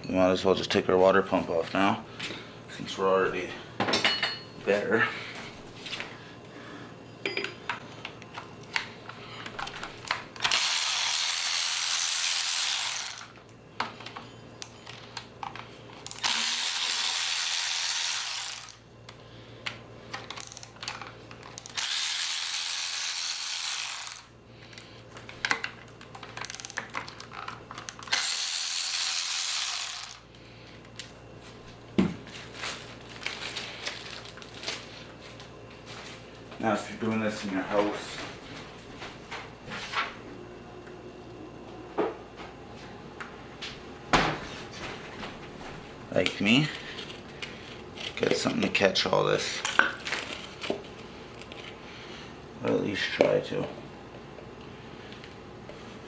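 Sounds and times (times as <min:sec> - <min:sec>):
tools and bolts clinking: 0:07.2 - 0:07.6
power ratchet running: 0:10.4 - 0:13.3, 0:16.0 - 0:18.8, 0:21.6 - 0:24.3, 0:28.0 - 0:30.3.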